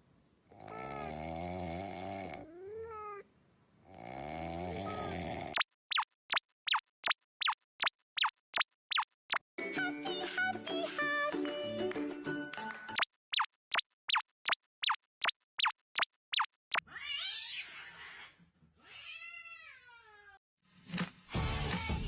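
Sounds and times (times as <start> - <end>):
rasping cat cry: 0.6 - 1.3, 2.4 - 3.3
music: 9.6 - 13.0, 20.8 - 22.0.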